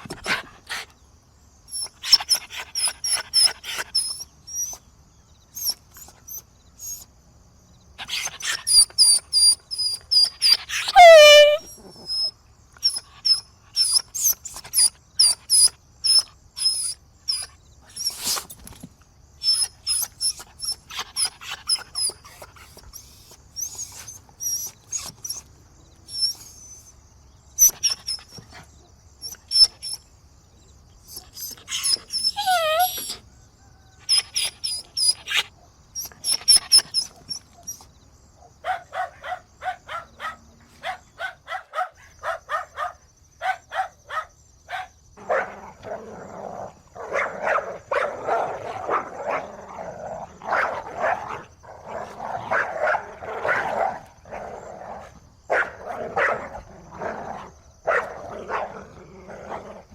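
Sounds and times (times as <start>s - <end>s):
puppies yelping and squealing: 1.7s - 4.8s, 5.6s - 7.0s, 8.0s - 18.4s, 19.4s - 25.5s, 26.1s - 26.9s, 27.6s - 28.5s, 29.2s - 30.0s, 31.1s - 33.2s, 34.0s - 37.8s
puppy whining: 1.7s - 4.8s, 5.6s - 7.1s, 8.0s - 18.5s, 19.4s - 27.0s, 27.6s - 28.6s, 29.2s - 30.0s, 31.0s - 33.2s, 34.0s - 37.9s
puppies yapping barks: 8.0s - 12.3s, 31.1s - 33.2s.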